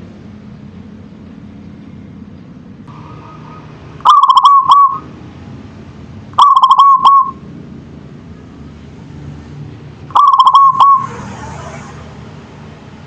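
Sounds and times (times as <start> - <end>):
dove cooing: 3.0 - 5.1, 6.4 - 7.4, 10.1 - 11.3.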